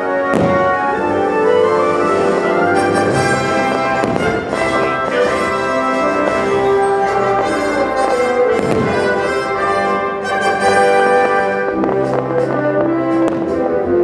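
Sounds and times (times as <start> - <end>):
orchestral brass music: 0.0 - 14.0.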